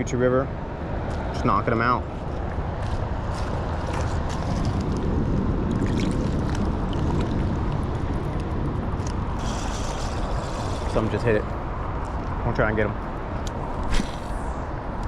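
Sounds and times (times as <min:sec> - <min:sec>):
flowing river water: 0:03.8 - 0:11.7.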